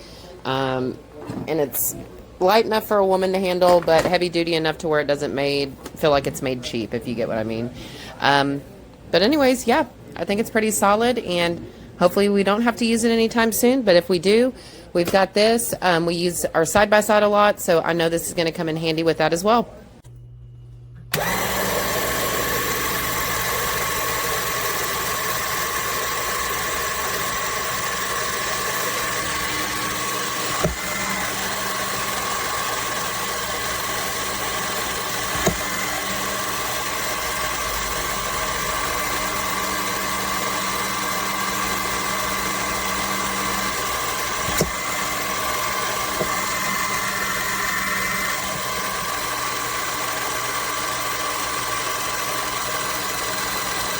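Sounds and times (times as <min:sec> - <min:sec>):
motor whining: 0:21.0 - 0:53.9.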